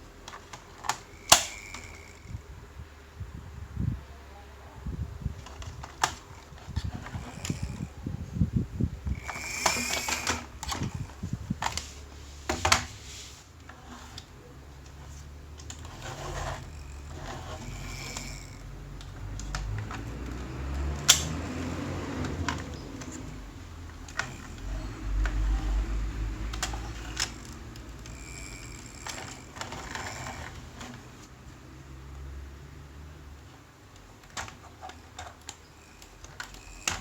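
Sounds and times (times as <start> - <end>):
toy cars clicking and clattering: 0.2 - 2.4, 5.4 - 8.0, 9.1 - 11.9, 13.6 - 31.3, 33.9 - 37.0.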